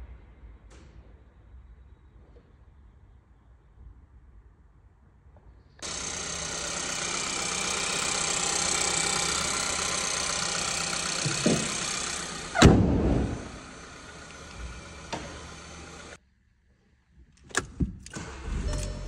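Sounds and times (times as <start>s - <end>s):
car engine starting and idling: 5.8s - 16.2s, 17.4s - 19.0s
loud thump: 12.6s - 13.6s.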